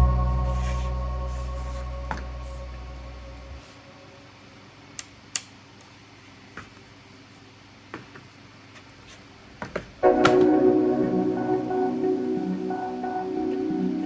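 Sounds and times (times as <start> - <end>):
background music: 0.0 - 3.6, 10.0 - 14.0.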